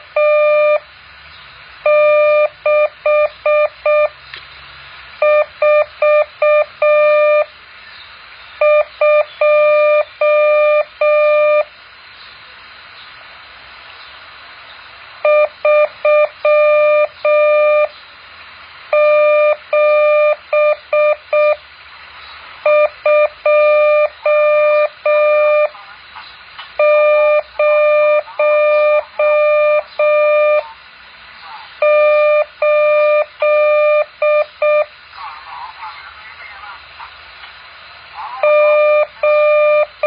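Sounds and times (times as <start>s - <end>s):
morse code beeps: 0.0s - 0.8s, 1.8s - 4.2s, 5.2s - 7.5s, 8.6s - 11.7s, 15.2s - 17.9s, 18.9s - 21.6s, 22.6s - 25.8s, 26.8s - 30.7s, 31.8s - 34.9s, 38.4s - 40.0s
faint hiss: 0.0s - 40.0s.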